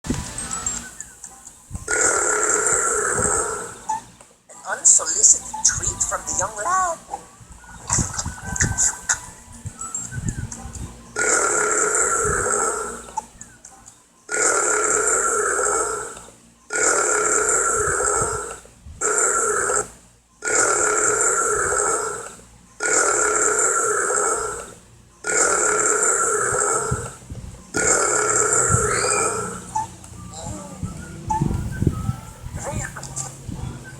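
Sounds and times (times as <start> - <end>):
loud cartoon burps: 11.2 - 13.0, 14.3 - 18.4, 19.0 - 22.2, 22.8 - 27.1, 27.8 - 29.4.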